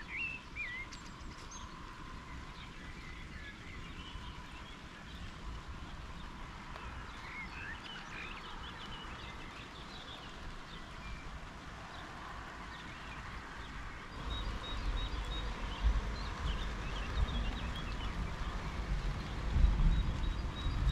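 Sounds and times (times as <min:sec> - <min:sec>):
birds chirping: 0:00.0 - 0:20.9
low rumble: 0:14.2 - 0:20.9.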